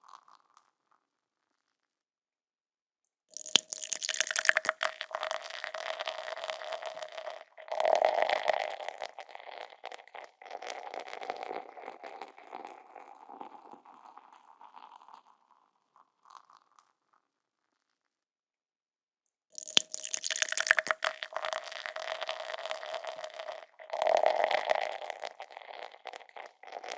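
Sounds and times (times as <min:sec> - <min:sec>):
beer foam fizzing: 0:03.4 - 0:15.2, 0:19.6 - 0:26.9
beer pouring into a glass: 0:03.4 - 0:16.6, 0:19.6 - 0:26.9.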